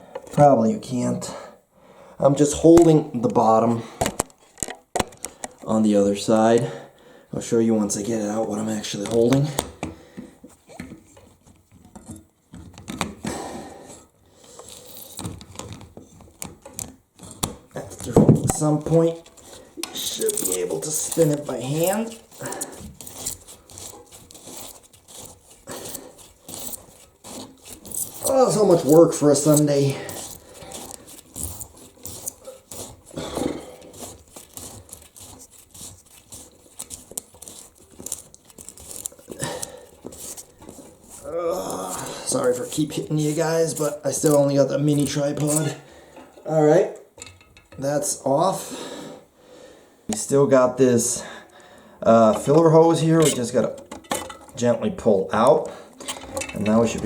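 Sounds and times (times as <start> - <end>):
pliers scraping and clicking on nut: 14.5 - 45.8, 52.3 - 54.6.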